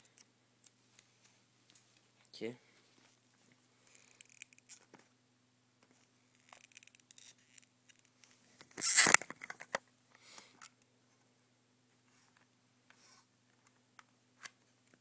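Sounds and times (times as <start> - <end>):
sharp plastic crackle: 6.4 - 9.8.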